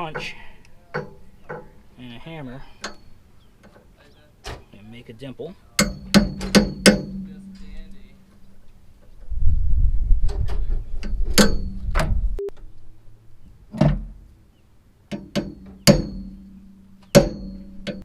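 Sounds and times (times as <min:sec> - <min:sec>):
hammer striking steel punch: 0:05.8 - 0:07.6, 0:15.1 - 0:18.0.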